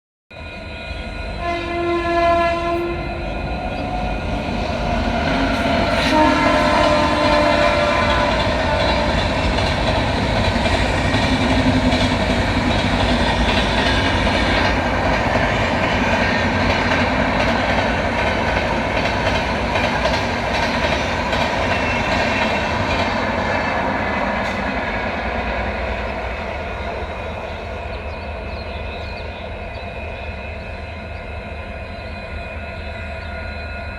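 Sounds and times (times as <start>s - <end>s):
train coaches rumbling by: 0.3s - 33.9s
locomotive horn: 1.4s - 9.8s.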